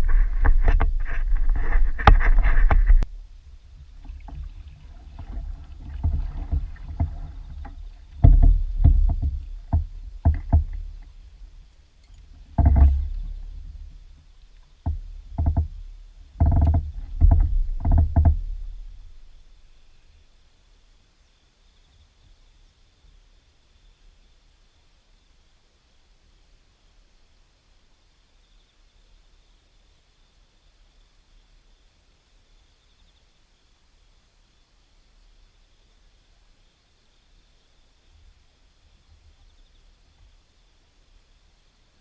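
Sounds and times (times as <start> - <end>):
knocks and clatter on kayak: 0.0 - 19.5.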